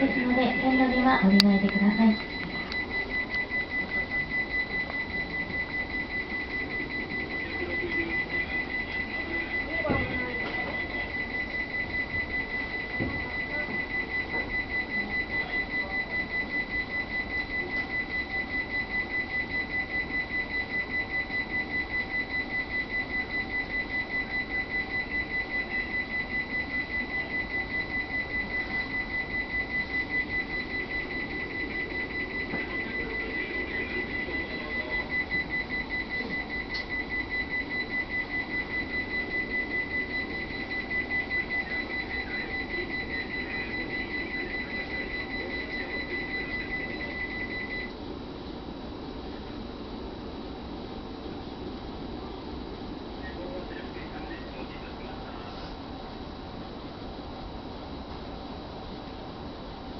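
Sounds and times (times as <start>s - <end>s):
rapid high electronic beeping: 0.0s - 47.9s.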